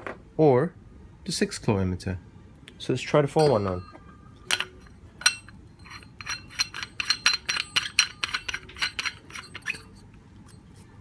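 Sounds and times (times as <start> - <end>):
metal parts clinking and scraping: 3.4 - 10.9
rapid clicks of screwing: 4.5 - 9.9.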